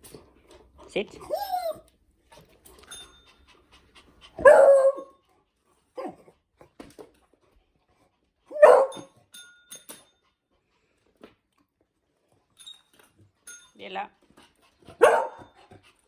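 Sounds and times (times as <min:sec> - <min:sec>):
dog yelp: 0:01.2 - 0:01.8, 0:04.4 - 0:05.1, 0:08.5 - 0:09.1, 0:15.0 - 0:15.5
dog barking: 0:04.4 - 0:05.1, 0:08.5 - 0:09.1, 0:15.0 - 0:15.5.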